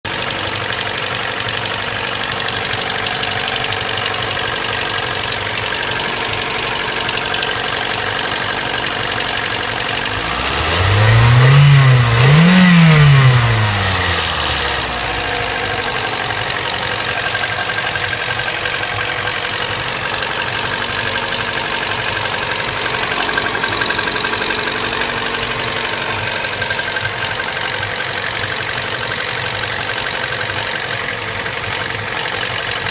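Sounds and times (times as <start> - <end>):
car engine idling and revving: 0.0 - 32.9.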